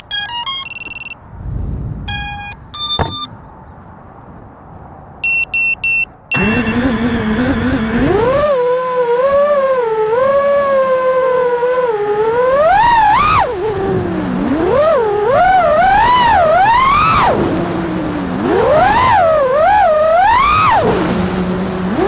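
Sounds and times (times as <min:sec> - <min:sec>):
electronic beep tones: 0:00.0 - 0:01.2, 0:02.1 - 0:03.3
drone motors whining: 0:02.1 - 0:03.3, 0:06.3 - 0:22.0.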